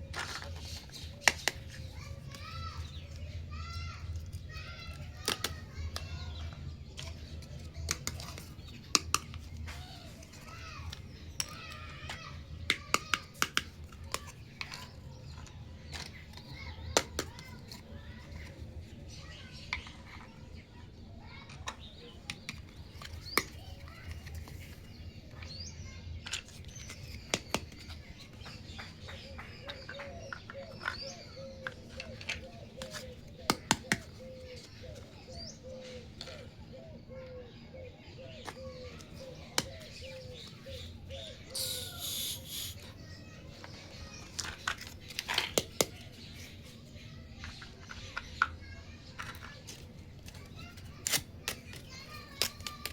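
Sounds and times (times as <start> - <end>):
bird calling: 29.2 - 42.9
plastic toy parts clicking: 49.2 - 52.9.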